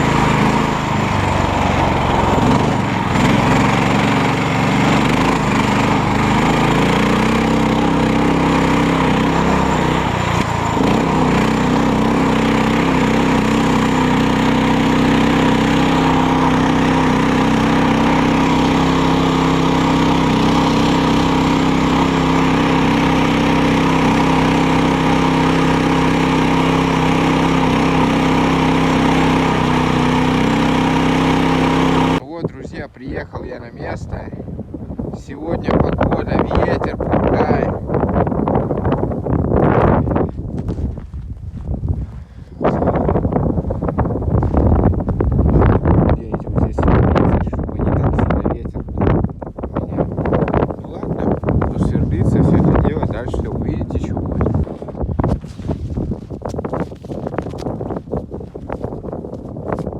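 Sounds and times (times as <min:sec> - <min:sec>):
small engine running: 0:00.0 - 0:32.2, 0:50.2 - 0:59.9.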